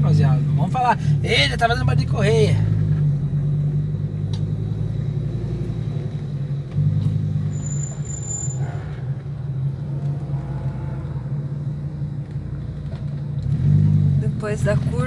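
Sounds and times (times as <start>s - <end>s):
car engine low hum: 0.0s - 15.0s
high-pitched squeal: 7.4s - 9.1s.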